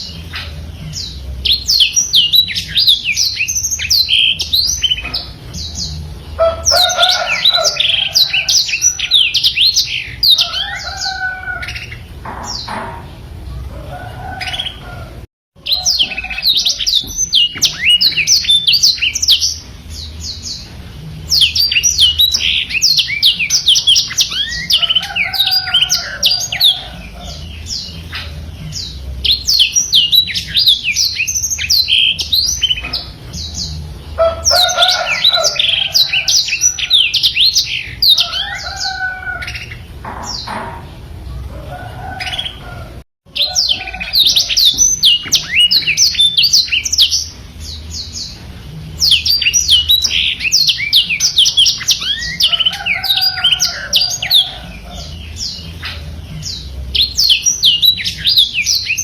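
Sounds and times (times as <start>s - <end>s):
canary singing: 0.0s - 59.0s.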